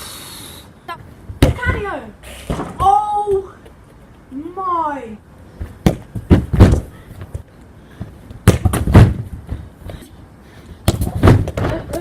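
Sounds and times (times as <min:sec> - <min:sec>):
football thudding against hard surfaces: 0:01.4 - 0:01.9, 0:02.5 - 0:02.9, 0:05.6 - 0:07.4, 0:08.0 - 0:09.5, 0:10.8 - 0:12.0.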